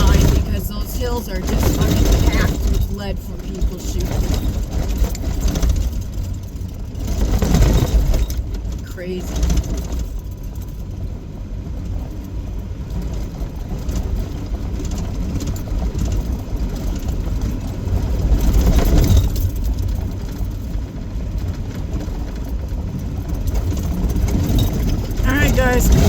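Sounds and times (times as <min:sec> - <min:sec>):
road rumble: 0:00.0 - 0:26.0
vehicle engine: 0:00.0 - 0:26.0.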